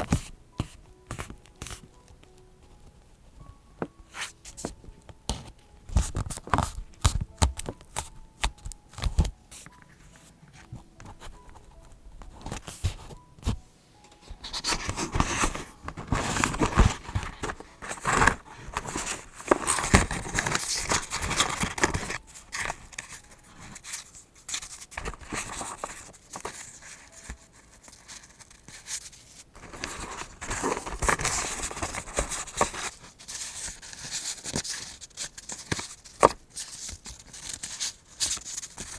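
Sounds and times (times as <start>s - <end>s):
paper rustling and tearing: 14.4s - 38.9s.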